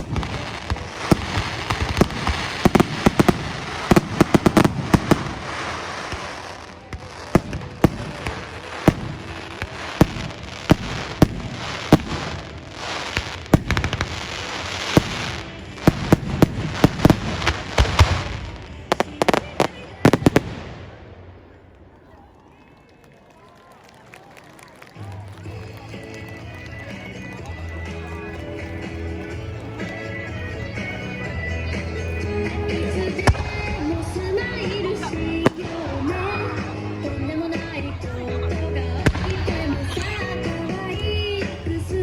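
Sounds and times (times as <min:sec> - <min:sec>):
crackling hiss of bursting shells: 0:00.0 - 0:18.4
fireworks bangs: 0:00.0 - 0:21.9, 0:25.3 - 0:38.2.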